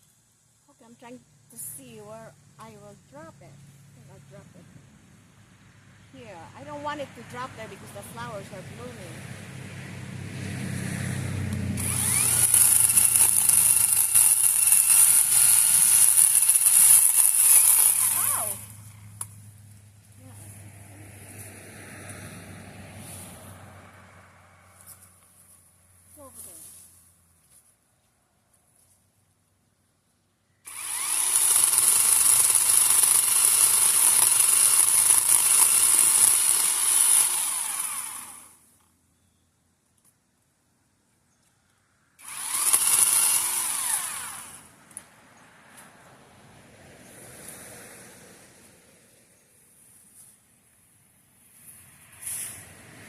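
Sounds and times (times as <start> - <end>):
chainsaw revving and cutting wood: 10.8 - 19.4, 30.7 - 38.7, 42.2 - 44.8.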